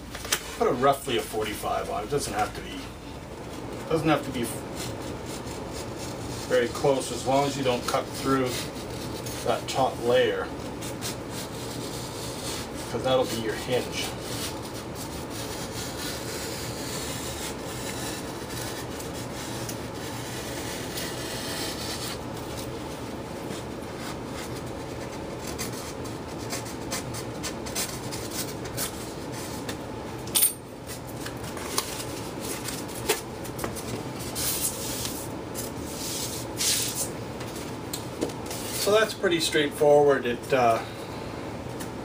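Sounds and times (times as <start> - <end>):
craft knife scraping foam board: 4.1 - 10.0, 10.6 - 29.8.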